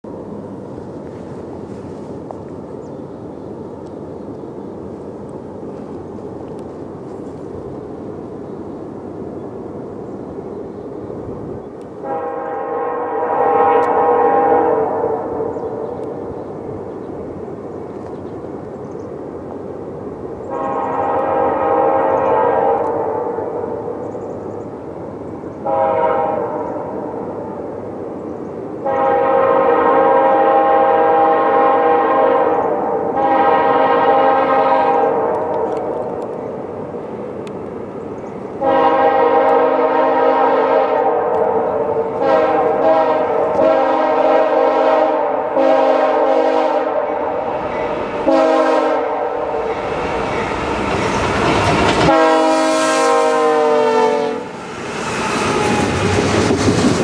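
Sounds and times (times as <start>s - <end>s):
train rolling: 0.0s - 57.0s
locomotive air horn blasts: 12.0s - 15.4s, 20.5s - 23.4s, 25.6s - 26.6s, 28.8s - 35.6s, 38.6s - 50.9s, 52.0s - 54.6s.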